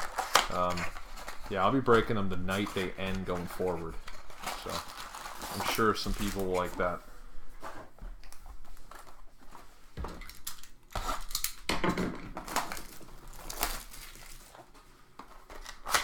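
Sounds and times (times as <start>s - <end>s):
cards rustling and crinkling: 0.0s - 11.7s, 12.4s - 16.0s.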